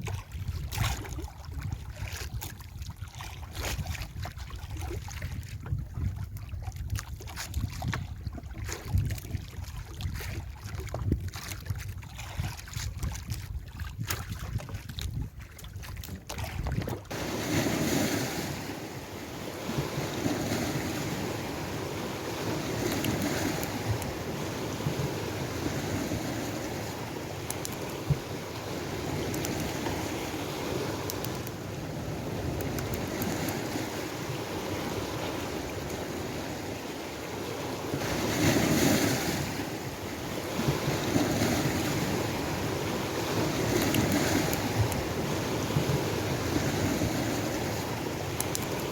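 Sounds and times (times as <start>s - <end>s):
wind buffeting microphone: 0.0s - 48.9s
sea waves surging: 17.1s - 48.9s.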